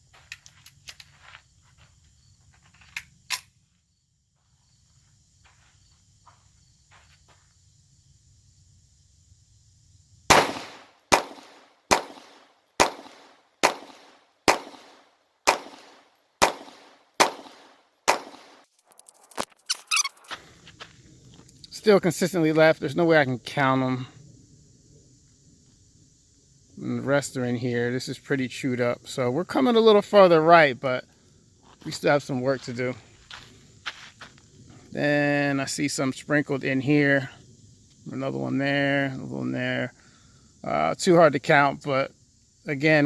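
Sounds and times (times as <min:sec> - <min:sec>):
pistol shots: 0:10.3 - 0:18.6.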